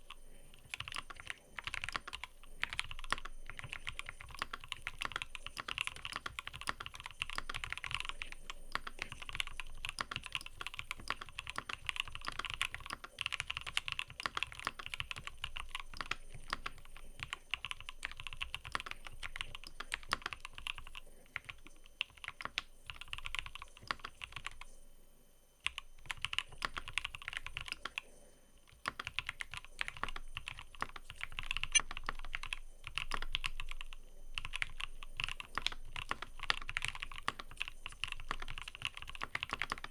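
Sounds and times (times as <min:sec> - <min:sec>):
fast typing on mechanical keyboard: 0:00.0 - 0:24.7, 0:25.6 - 0:28.0, 0:28.7 - 0:39.9.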